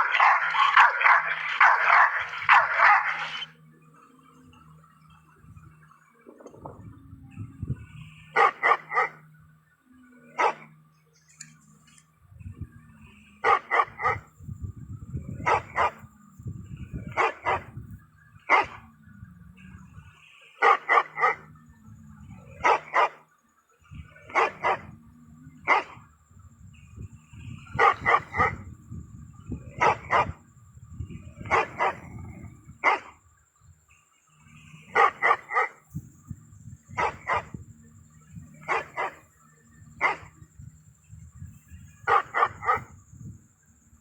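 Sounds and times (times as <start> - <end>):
dog barking: 0.0 - 3.5, 8.4 - 9.2, 10.4 - 10.7, 13.4 - 14.3, 15.4 - 16.1, 17.1 - 17.8, 18.5 - 18.9, 20.6 - 21.5, 22.5 - 23.2, 24.2 - 25.0, 25.6 - 26.0, 27.8 - 28.7, 29.7 - 30.4, 31.4 - 33.2, 34.9 - 35.8, 36.9 - 37.6, 38.6 - 39.2, 40.0 - 40.4, 42.0 - 42.9
low steady hum: 0.0 - 13.4.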